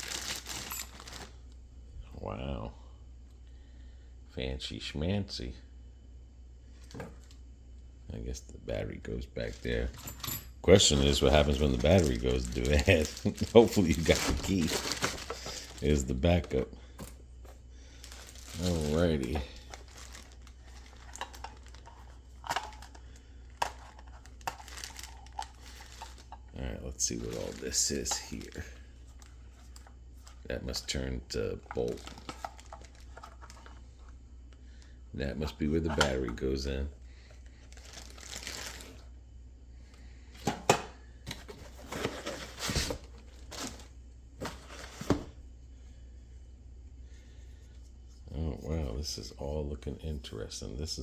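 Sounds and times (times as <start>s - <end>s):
packaging rustling: 0.0s - 1.4s, 9.4s - 17.1s, 18.0s - 26.4s, 27.0s - 29.8s, 31.6s - 33.8s, 37.5s - 39.1s, 41.3s - 45.2s
low steady hum: 0.0s - 51.0s.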